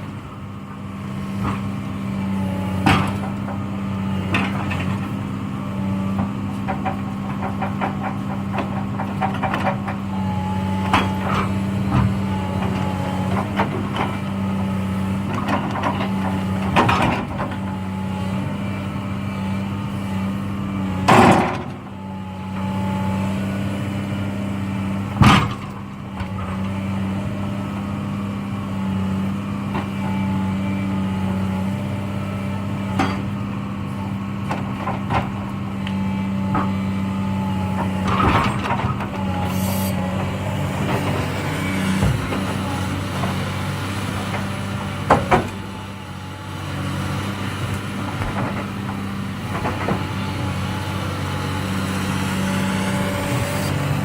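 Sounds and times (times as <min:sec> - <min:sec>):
excavator diesel engine running: 0:00.0 - 0:54.0
logs knocking onto truck: 0:37.8 - 0:46.0, 0:46.7 - 0:50.6.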